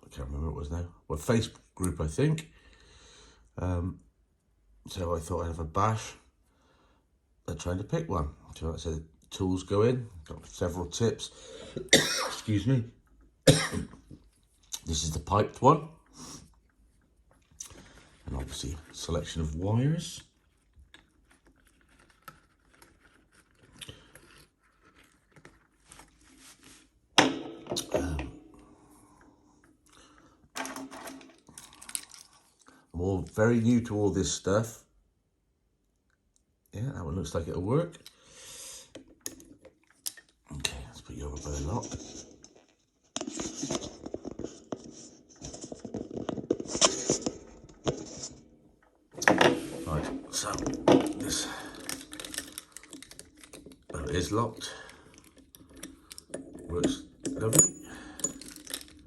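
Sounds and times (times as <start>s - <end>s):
metal picks clicking and scraping: 50.3s - 59.0s.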